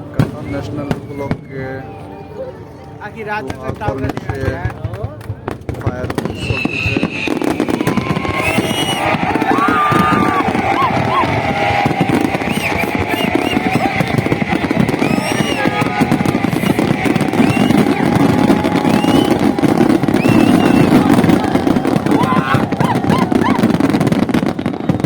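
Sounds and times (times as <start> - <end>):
fireworks bursts and crackling: 3.4 - 25.0
fireworks whistles: 6.2 - 25.0.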